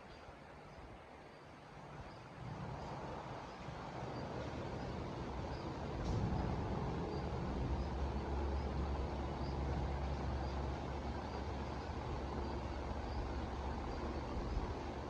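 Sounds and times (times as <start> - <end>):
steady rain: 1.6 - 15.0
deep low rumble: 5.2 - 14.8.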